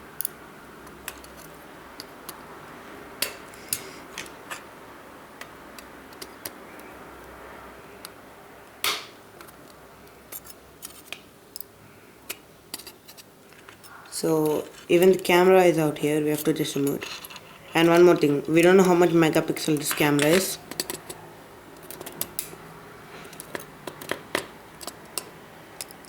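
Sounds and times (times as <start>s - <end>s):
tool scraping: 12.8s - 15.4s, 16.0s - 20.6s.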